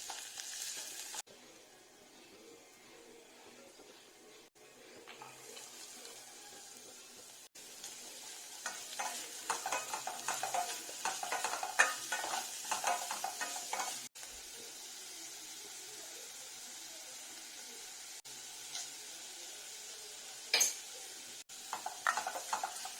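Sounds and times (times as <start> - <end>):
food sizzling in hot oil: 0.0 - 1.3, 5.0 - 22.9
spatula scraping a pan: 8.6 - 14.1.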